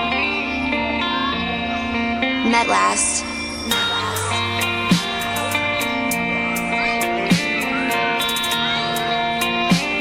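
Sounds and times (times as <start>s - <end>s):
guitar-like melody: 0.0s - 10.0s
hi-hats: 3.7s - 10.0s.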